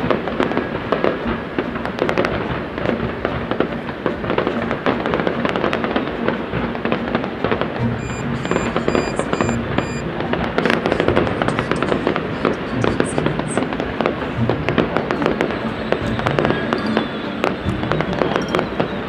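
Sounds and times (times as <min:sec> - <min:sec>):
fireworks crackling and popping: 0:00.0 - 0:19.0.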